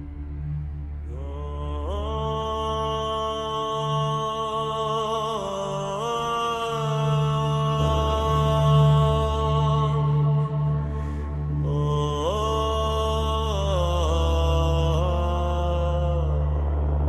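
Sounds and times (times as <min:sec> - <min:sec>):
deep bass drone: 0:00.0 - 0:17.0
droning chant-like held tones: 0:00.0 - 0:17.0
pulsing low note: 0:07.9 - 0:17.0.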